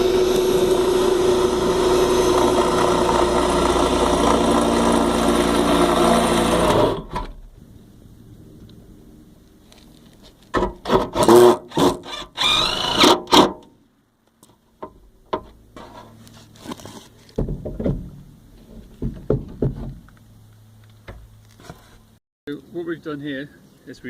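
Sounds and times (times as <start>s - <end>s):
scraping and knocks: 14.8s - 20.1s.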